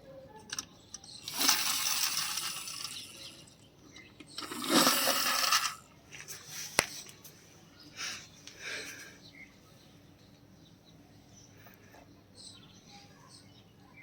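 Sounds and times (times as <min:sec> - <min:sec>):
small hard objects rattling: 0:00.4 - 0:05.8.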